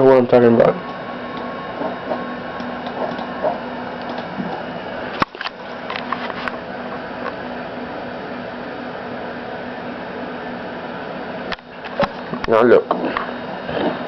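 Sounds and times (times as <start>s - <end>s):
desktop computer humming: 0.0s - 14.0s
sharp clicks: 4.0s - 4.3s.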